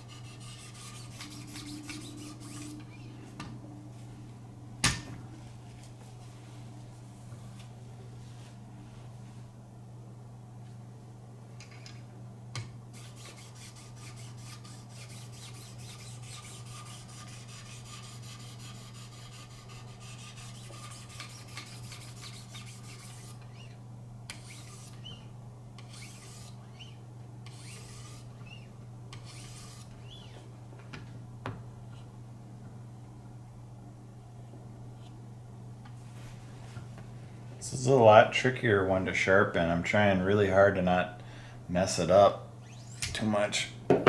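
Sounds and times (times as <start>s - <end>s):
sharpening stones rasping on knife: 13.0s - 25.2s, 25.8s - 26.6s, 27.5s - 28.6s, 29.2s - 29.9s.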